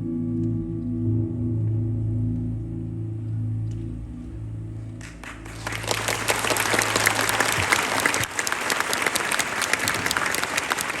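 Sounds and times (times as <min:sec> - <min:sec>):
audience applauding: 0:05.0 - 0:11.0.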